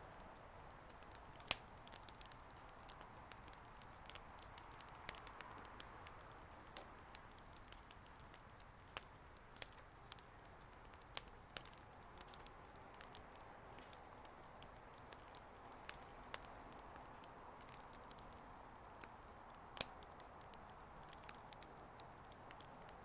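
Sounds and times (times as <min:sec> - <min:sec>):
bonfire crackling: 0:00.0 - 0:23.0
faint steady hiss: 0:00.0 - 0:23.0.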